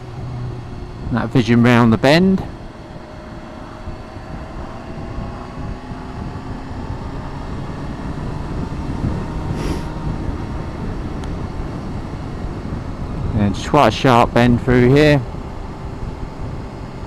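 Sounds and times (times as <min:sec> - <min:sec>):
motorcycle engine running: 0:00.0 - 0:17.0
wind and road noise: 0:00.0 - 0:17.0.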